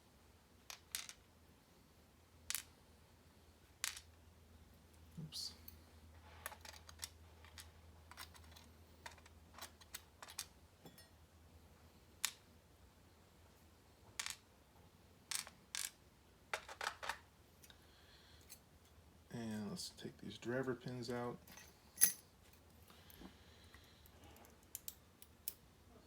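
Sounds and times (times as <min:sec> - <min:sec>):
small metallic clicks: 0:23.7 - 0:25.6.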